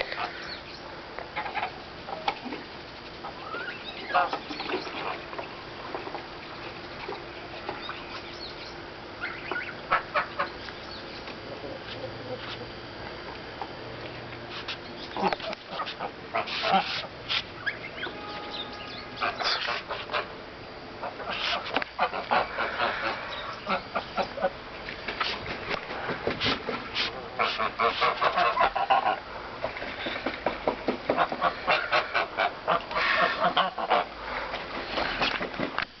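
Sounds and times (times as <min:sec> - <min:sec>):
geese and poultry calling: 0:00.0 - 0:00.7, 0:03.2 - 0:05.4, 0:09.2 - 0:12.8, 0:15.0 - 0:20.4, 0:21.0 - 0:24.6, 0:27.2 - 0:29.3, 0:31.1 - 0:34.5
honks and squawks: 0:17.6 - 0:20.4.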